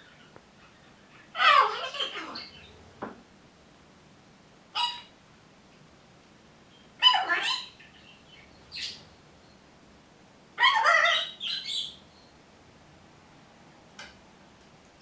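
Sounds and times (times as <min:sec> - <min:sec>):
parrot squawking: 0:01.4 - 0:02.7, 0:04.8 - 0:05.1, 0:07.0 - 0:07.8, 0:10.6 - 0:11.9.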